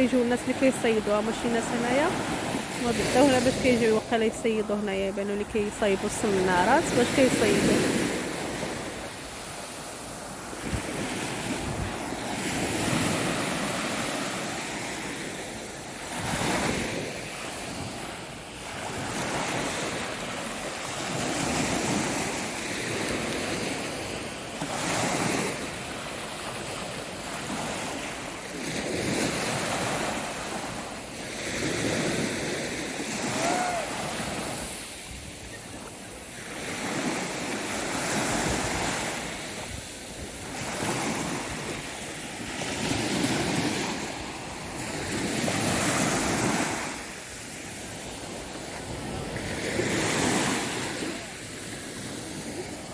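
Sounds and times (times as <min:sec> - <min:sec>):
sea waves breaking on shore: 0:00.0 - 0:52.9
wind buffeting microphone: 0:10.5 - 0:13.6.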